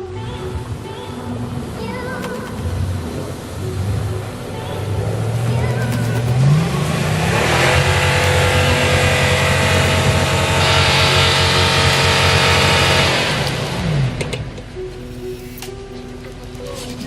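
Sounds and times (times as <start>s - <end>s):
car engine revving: 0.7s - 15.4s.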